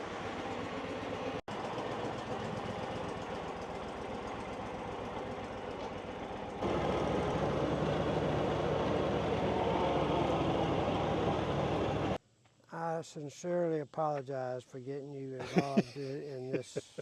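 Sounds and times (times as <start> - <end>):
engine running: 0.0 - 12.2.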